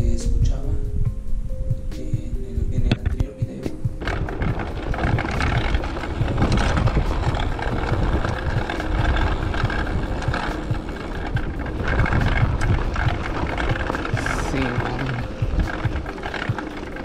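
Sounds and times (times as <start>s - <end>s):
wind on microphone: 0.0s - 17.0s
bike tyres rumbling on rough ground: 2.8s - 17.0s
small irregular knocks: 2.9s - 3.3s, 4.0s - 17.0s.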